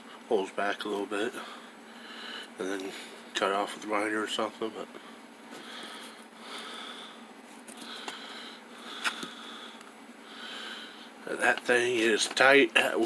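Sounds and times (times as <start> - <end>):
man breathing: 1.4 - 3.3, 5.0 - 11.2.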